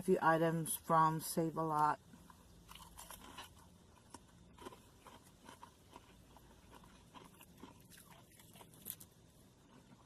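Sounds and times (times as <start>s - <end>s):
person chewing food: 2.1s - 10.0s.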